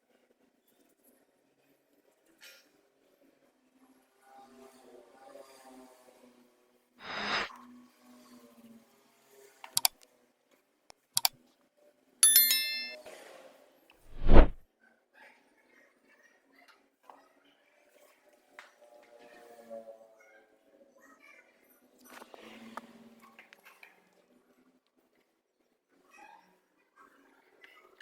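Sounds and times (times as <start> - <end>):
metallic clink: 12.2 - 13.0.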